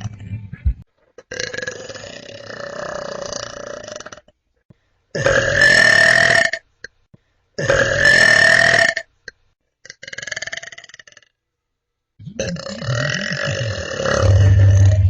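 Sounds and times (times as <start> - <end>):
person burping: 5.2 - 6.0, 7.6 - 8.3, 12.2 - 15.0.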